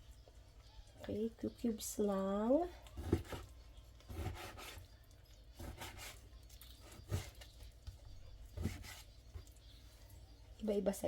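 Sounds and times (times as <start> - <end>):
knife scraping cuts: 4.1 - 4.8, 5.6 - 6.2.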